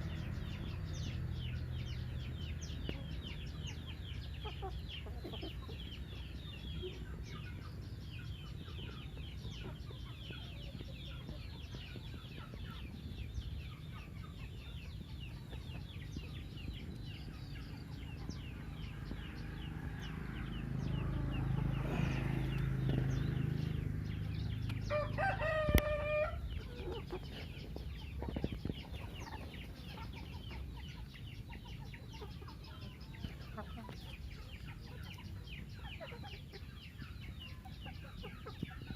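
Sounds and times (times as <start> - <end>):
chickens clucking and chirping: 0.0 - 38.9
rooster crowing: 24.9 - 26.4.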